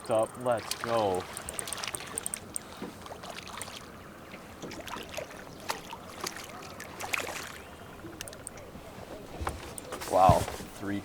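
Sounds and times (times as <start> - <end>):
water lapping around boat: 0.0 - 11.0
small clicks and knocks: 1.3 - 2.9.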